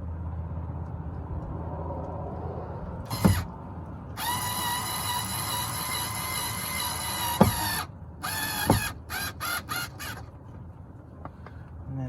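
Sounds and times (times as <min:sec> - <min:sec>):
cordless drill motor whining: 0:03.1 - 0:03.5, 0:04.1 - 0:10.3.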